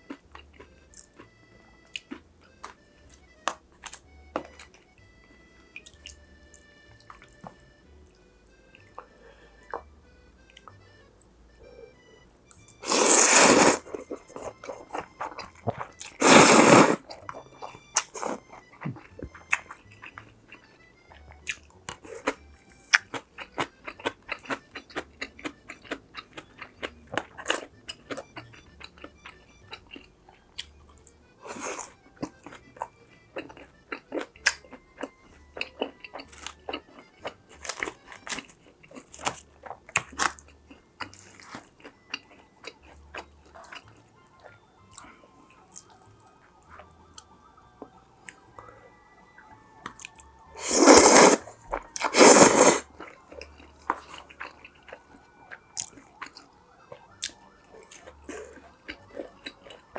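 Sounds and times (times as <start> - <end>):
chewing crunchy food: 0.0 - 59.9
crunching bites: 12.6 - 48.7, 49.3 - 59.9
wet mouth clicks: 49.9 - 55.0.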